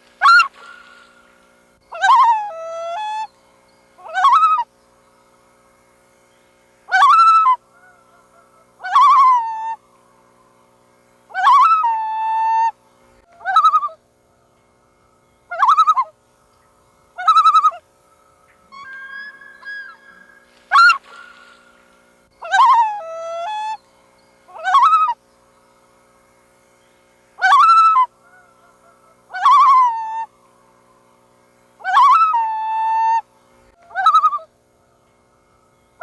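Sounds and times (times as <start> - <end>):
loon calling: 0.2 - 1.1, 1.9 - 3.3, 4.0 - 4.7, 6.9 - 9.8, 11.3 - 14.6, 15.5 - 16.2, 17.1 - 17.9, 18.5 - 21.8, 22.4 - 23.8, 24.5 - 25.2, 27.4 - 30.3, 31.8 - 35.0.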